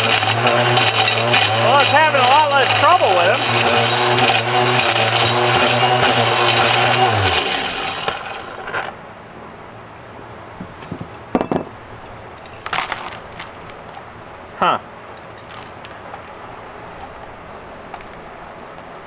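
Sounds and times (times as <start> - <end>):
ore crusher motor humming: 0.0 - 9.0
plastic pieces rattling in crusher: 0.0 - 9.0, 12.4 - 14.0, 15.2 - 18.3.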